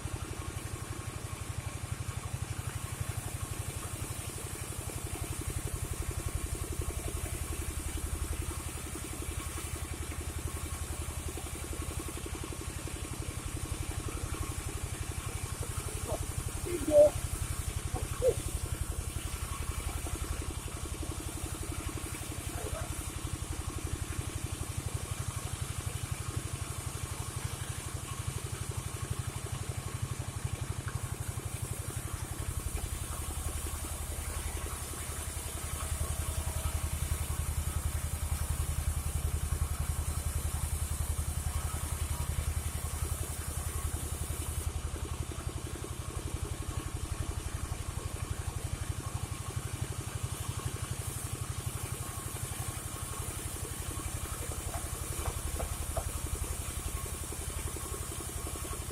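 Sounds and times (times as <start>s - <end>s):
sawmill engine running: 1.7s - 29.4s, 46.0s - 58.9s.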